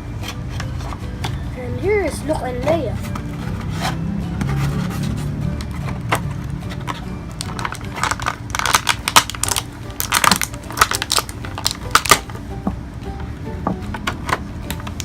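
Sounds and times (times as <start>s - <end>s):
quiet background music: 0.0s - 15.0s
plastic packaging crinkling: 6.8s - 12.3s.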